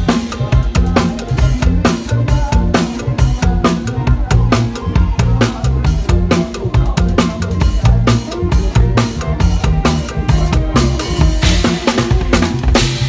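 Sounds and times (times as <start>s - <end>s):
bass drum and snare strokes: 0.0s - 13.0s
bass line: 0.0s - 13.0s
upbeat band music: 0.0s - 13.0s.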